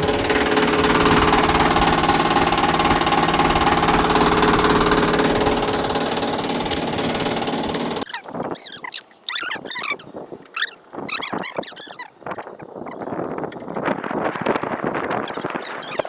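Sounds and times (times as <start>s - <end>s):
air conditioner humming and rattling: 0.0s - 8.1s.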